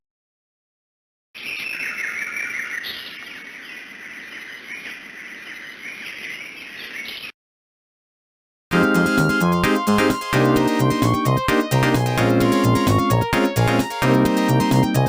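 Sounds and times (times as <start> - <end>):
birds chirping ringtone: 1.4 - 7.4.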